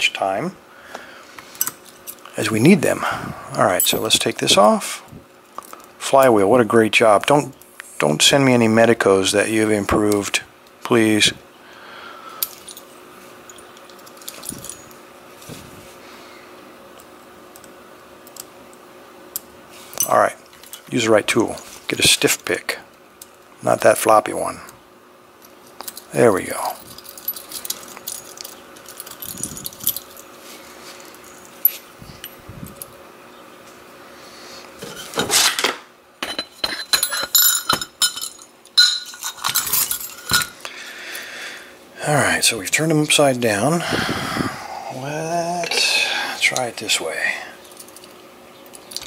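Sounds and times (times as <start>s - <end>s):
lock parts clicking and clinking: 25.4s - 30.3s, 34.8s - 40.7s, 47.6s - 49.0s
metal parts tipped out clinking: 34.8s - 40.6s.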